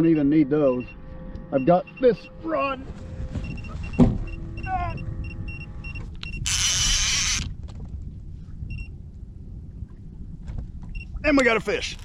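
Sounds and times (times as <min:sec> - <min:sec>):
low steady rumble: 0:00.0 - 0:12.0
fishing reel clicker buzzing: 0:06.2 - 0:07.5.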